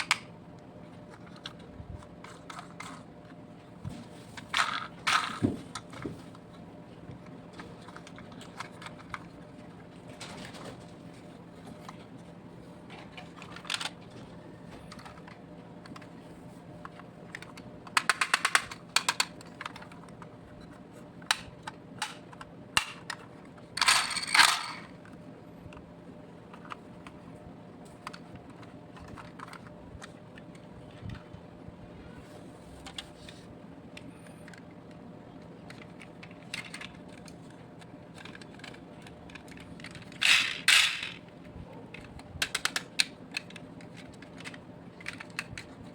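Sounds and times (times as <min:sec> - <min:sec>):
faint steady hum: 0:00.0 - 0:45.9
toy vehicles clicking and rattling: 0:01.1 - 0:03.1, 0:04.4 - 0:06.0, 0:07.5 - 0:09.4, 0:13.2 - 0:14.2, 0:16.8 - 0:20.3, 0:21.2 - 0:25.1, 0:28.0 - 0:30.5, 0:35.6 - 0:41.3, 0:41.9 - 0:45.9.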